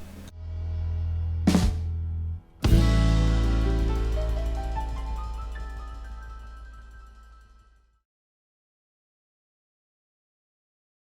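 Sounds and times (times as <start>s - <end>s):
background music chord: 0.3s - 7.8s.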